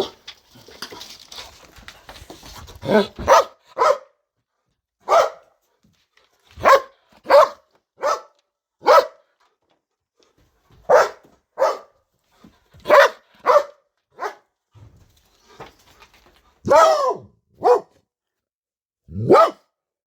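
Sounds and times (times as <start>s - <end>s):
dog barking loudly: 2.8s - 4.2s, 5.0s - 5.5s, 6.6s - 9.3s, 10.8s - 12.0s, 12.8s - 14.5s, 16.6s - 18.0s, 19.1s - 19.7s.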